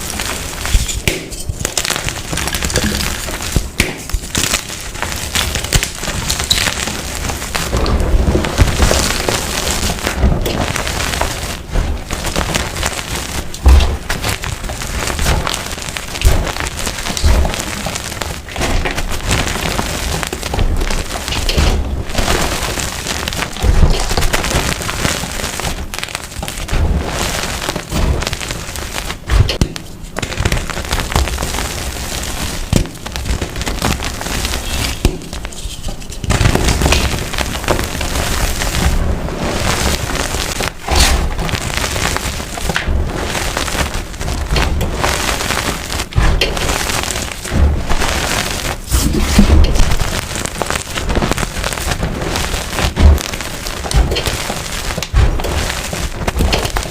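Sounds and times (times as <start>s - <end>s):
chalk crunching and crackling: 0.0s - 56.9s
low thumps: 13.6s - 15.5s.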